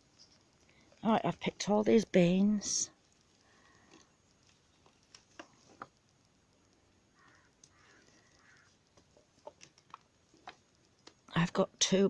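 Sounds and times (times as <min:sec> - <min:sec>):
faint clicks and taps: 0:02.9 - 0:11.4.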